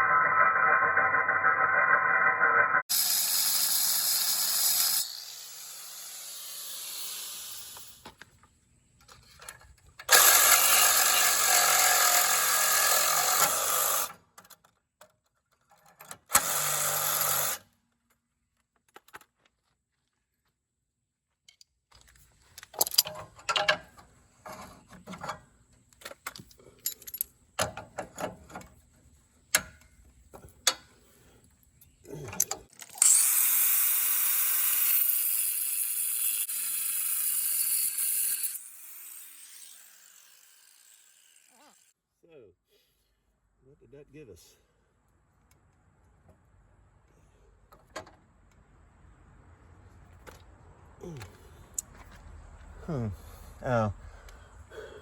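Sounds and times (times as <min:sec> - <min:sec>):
angle grinder cutting steel: 0:00.0 - 0:08.0, 0:10.1 - 0:14.1, 0:33.0 - 0:42.0.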